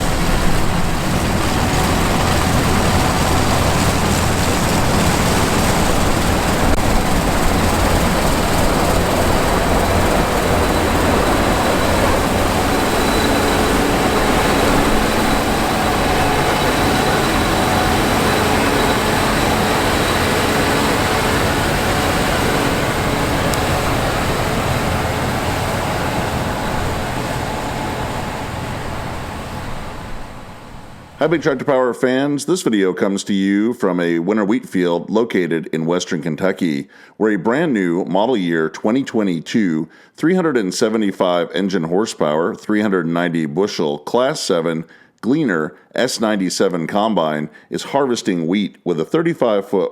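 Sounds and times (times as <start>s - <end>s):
combine harvester engine hum: 0.0s - 31.4s
harvesting machinery noise: 0.0s - 31.4s.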